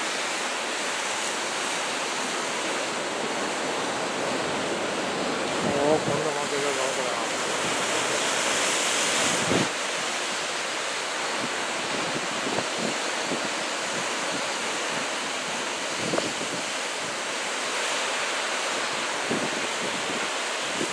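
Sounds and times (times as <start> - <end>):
ocean surf breaking: 0.0 - 20.9
wind buffeting microphone: 9.2 - 9.7.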